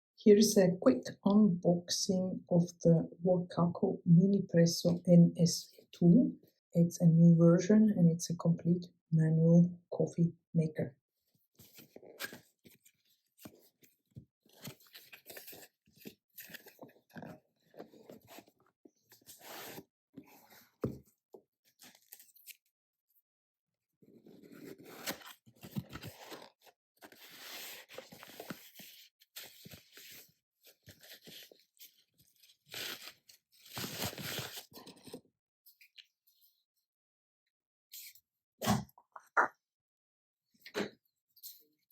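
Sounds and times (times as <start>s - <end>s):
packaging crinkling and tearing: 14.5s - 17.3s, 30.9s - 34.8s.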